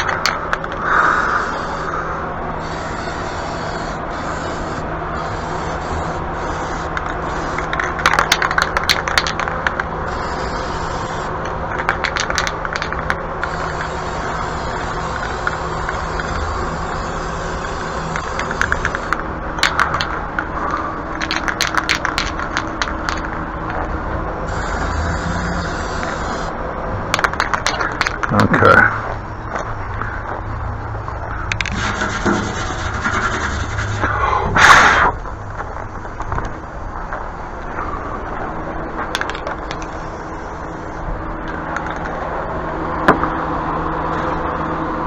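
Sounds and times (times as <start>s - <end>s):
electric fan humming: 0.0s - 28.6s
rapid rattling clicks: 5.2s - 23.9s, 27.1s - 28.4s.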